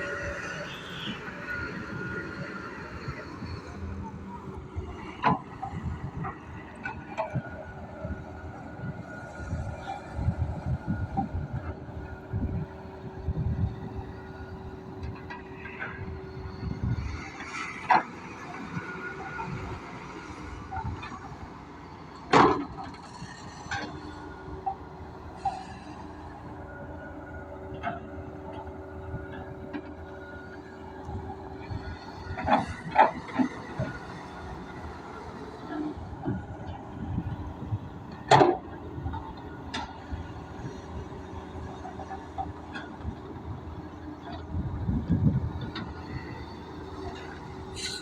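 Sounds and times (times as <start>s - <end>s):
excavator engine rumbling: 0.0s - 48.0s.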